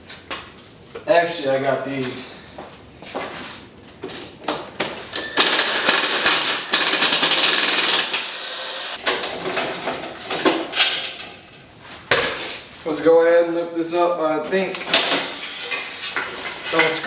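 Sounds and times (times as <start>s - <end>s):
loud fast metal rattling: 5.4s - 8.8s.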